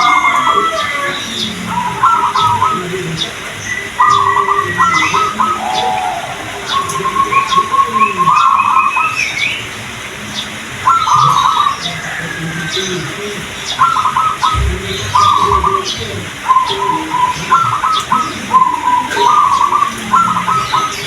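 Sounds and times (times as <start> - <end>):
doves cooing: 0.0 - 21.0
high whistles and chirps: 3.6 - 9.6.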